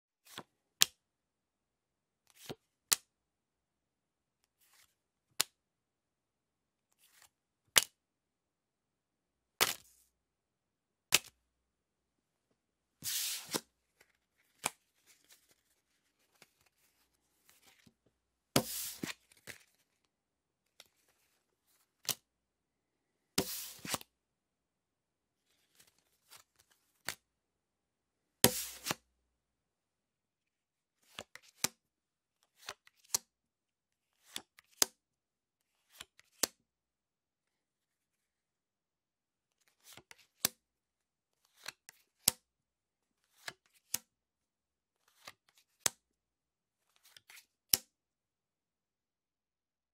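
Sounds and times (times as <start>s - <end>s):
playing cards snapping: 11.1s - 11.3s, 18.6s - 19.6s, 28.5s - 29.0s
cards swishing: 13.0s - 17.9s, 18.6s - 19.8s, 23.4s - 24.1s, 28.5s - 29.0s.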